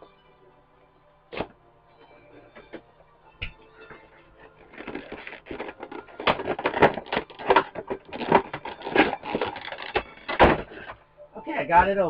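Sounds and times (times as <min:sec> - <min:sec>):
packaging crackling and tearing: 0:04.5 - 0:10.8.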